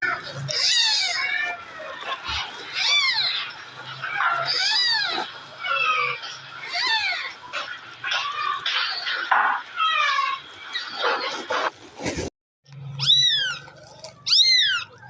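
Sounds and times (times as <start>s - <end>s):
cat meowing: 0.3s - 7.4s, 12.9s - 15.0s.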